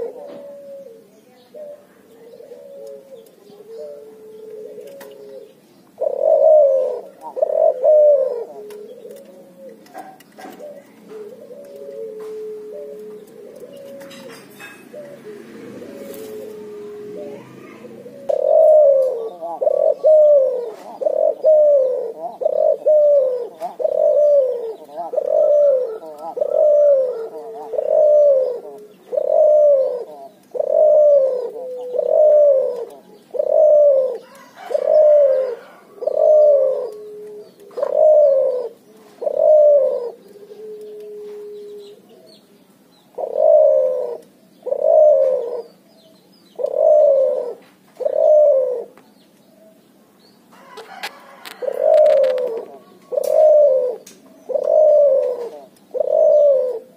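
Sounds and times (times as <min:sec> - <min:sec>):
dove cooing: 0:00.0 - 0:49.0, 0:50.5 - 0:56.9.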